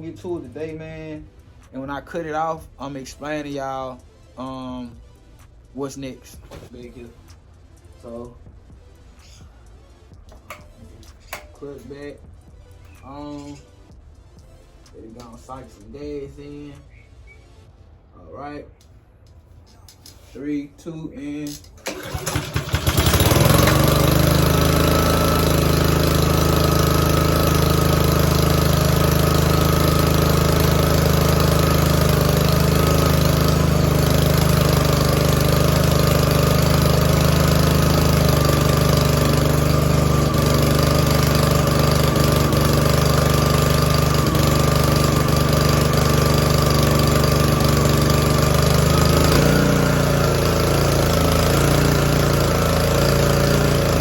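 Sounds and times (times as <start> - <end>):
small engine starting and running: 21.7 - 54.0.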